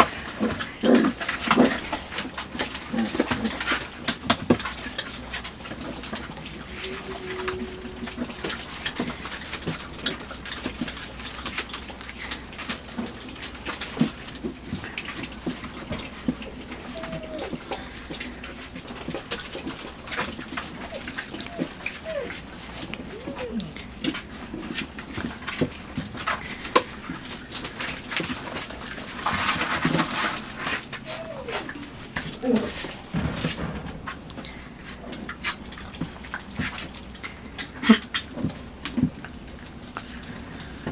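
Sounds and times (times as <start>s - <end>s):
puppies scratching: 0.0s - 40.8s
puppies grunting and squeaking: 4.5s - 36.0s
puppies whining and squeaking: 6.4s - 9.7s, 16.4s - 18.4s, 20.2s - 24.2s, 30.7s - 32.9s
rustling scrape: 27.3s - 35.6s.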